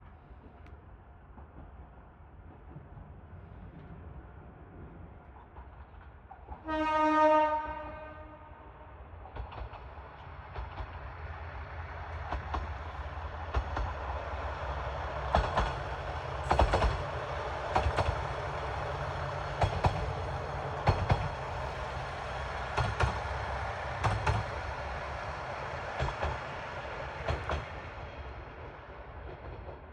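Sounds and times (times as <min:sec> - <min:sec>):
diesel railcar engine rumble: 0:00.0 - 0:29.9
train horn: 0:06.6 - 0:08.9
wheels clicking over rail joints: 0:12.1 - 0:29.9.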